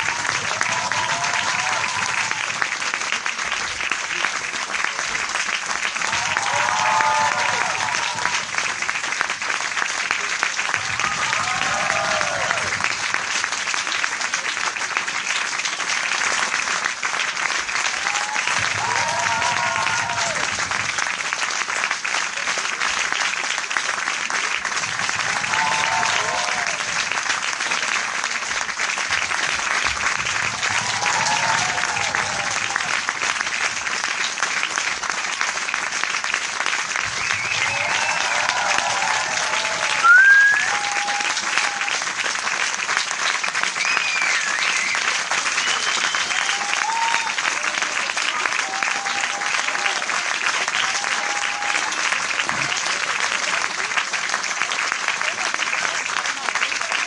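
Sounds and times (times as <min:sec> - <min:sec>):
crowd applauding: 0:00.0 - 0:57.0
loud rising call: 0:39.8 - 0:41.4.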